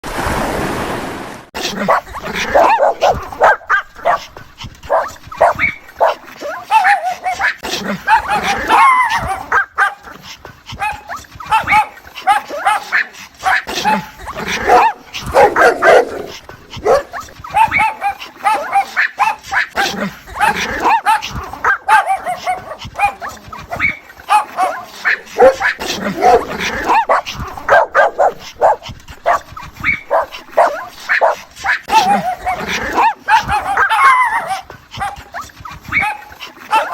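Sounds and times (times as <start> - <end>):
dog whining and yipping: 2.5 - 9.8, 14.7 - 19.6, 21.1 - 36.9.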